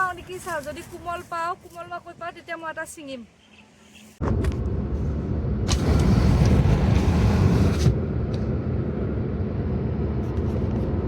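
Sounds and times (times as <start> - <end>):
vehicle engine and road rumble: 0.0 - 11.0.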